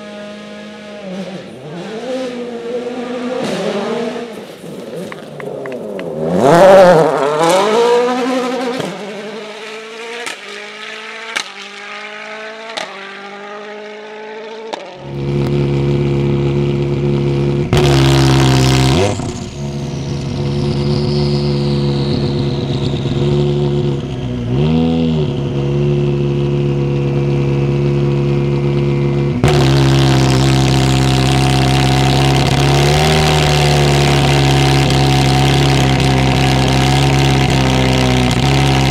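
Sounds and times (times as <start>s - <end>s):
rally car accelerating past: 0.0s - 16.8s
high whistle falling in pitch: 19.0s - 23.3s.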